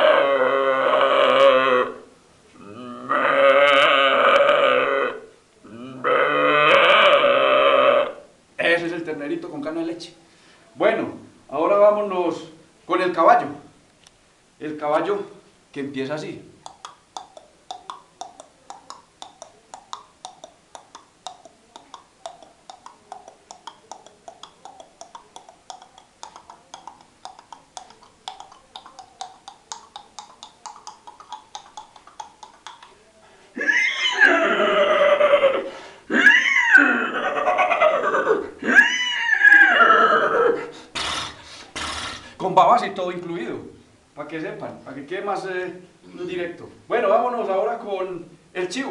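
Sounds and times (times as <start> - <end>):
man imitating horse whinnies: 0.0 - 2.0, 2.6 - 8.3, 33.6 - 42.2
man clicking tongue like hooves: 16.6 - 33.0, 40.9 - 42.3.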